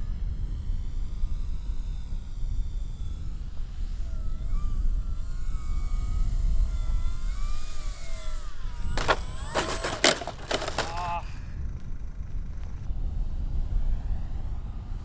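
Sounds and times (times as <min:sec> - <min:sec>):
model airplane motor in flight: 0:03.3 - 0:11.3.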